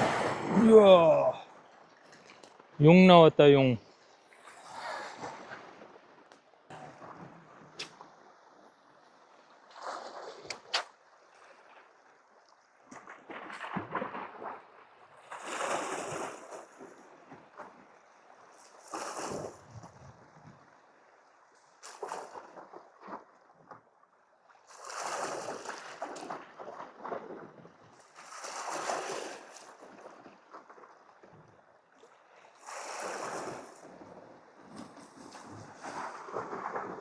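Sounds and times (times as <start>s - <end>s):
sea waves washing against rocks: 0.0s - 1.7s, 32.6s - 37.0s.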